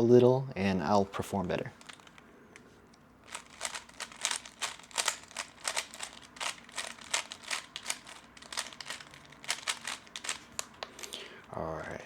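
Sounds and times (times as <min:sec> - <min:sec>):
plastic puzzle cube clicking: 0:03.3 - 0:10.9.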